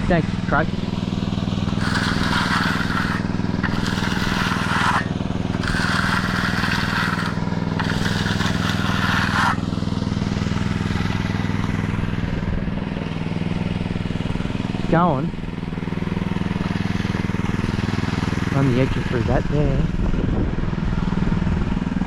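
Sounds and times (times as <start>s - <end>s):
motor running steadily: 0.0s - 22.0s
rough scraping noise: 0.4s - 12.5s, 16.3s - 20.0s.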